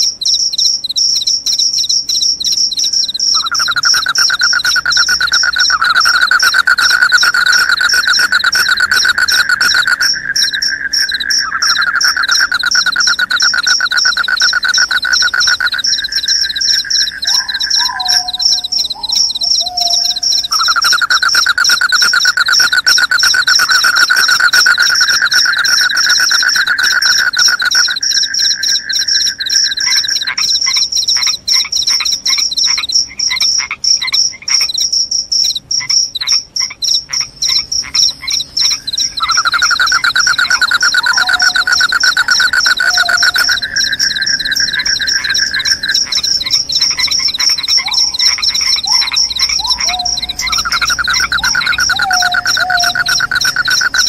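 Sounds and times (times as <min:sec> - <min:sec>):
crickets chirping: 0:00.0 - 0:54.0
lower falling call: 0:38.9 - 0:45.9, 0:47.8 - 0:54.0.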